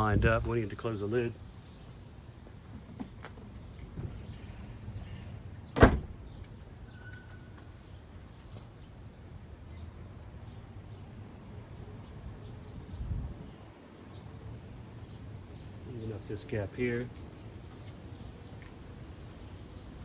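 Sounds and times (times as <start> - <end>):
car hatch slamming: 5.8 - 6.2.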